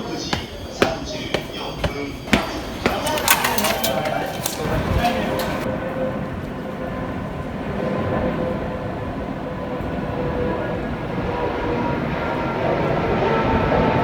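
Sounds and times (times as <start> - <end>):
electric train humming: 0.0 - 6.6.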